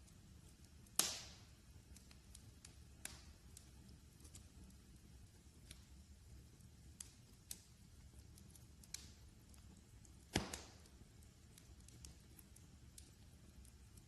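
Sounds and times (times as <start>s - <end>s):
fireplace fire crackling: 0.0s - 14.0s.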